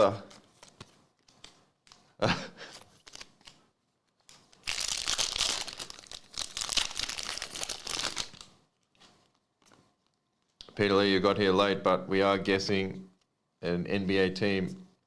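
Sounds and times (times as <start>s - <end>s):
card wrapper crinkling: 0.0s - 1.6s, 2.8s - 3.6s, 4.2s - 8.5s.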